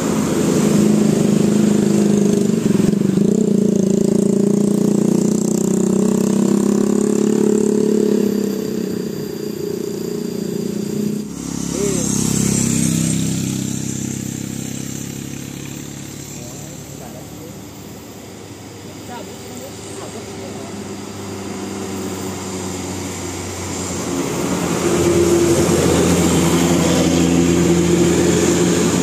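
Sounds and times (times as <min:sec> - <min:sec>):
bus passing close by: 0:00.0 - 0:29.0
quieter vehicle sound: 0:00.0 - 0:29.0.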